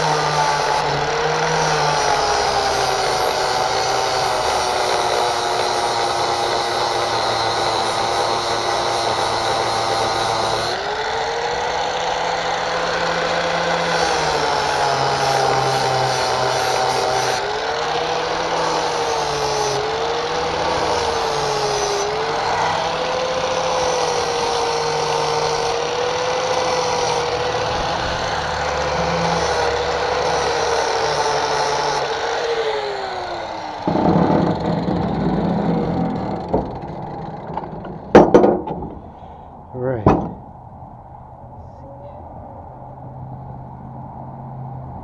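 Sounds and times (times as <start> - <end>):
grinder winding down: 0.0 - 38.2
die grinder grinding metal: 0.0 - 39.2
rough noise: 33.4 - 40.8.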